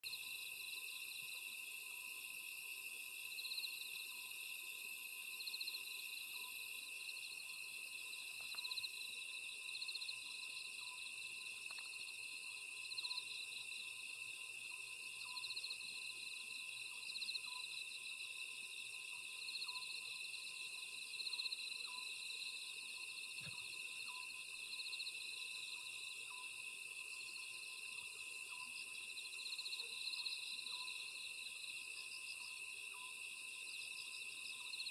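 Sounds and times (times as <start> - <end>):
crickets chirring: 0.0 - 18.2.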